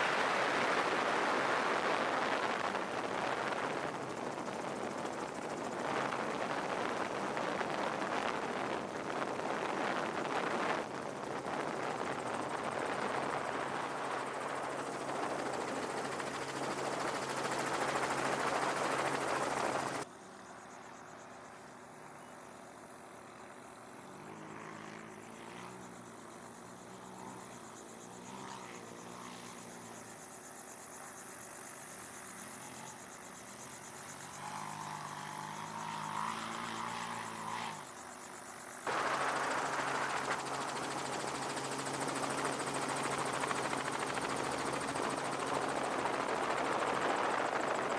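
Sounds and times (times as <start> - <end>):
rushing engine and wind noise: 0.0 - 20.1, 23.0 - 47.9
steady low hum: 0.0 - 20.1, 38.9 - 47.9.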